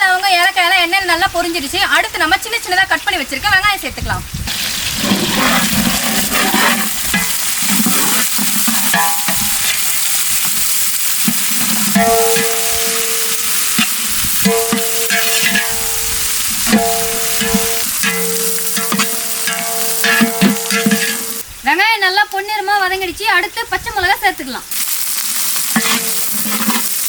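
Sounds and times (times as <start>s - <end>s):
onions sizzling in hot oil: 0.0s - 27.0s
ladle scraping and knocking pot: 4.5s - 10.6s, 11.2s - 21.4s, 25.7s - 27.0s.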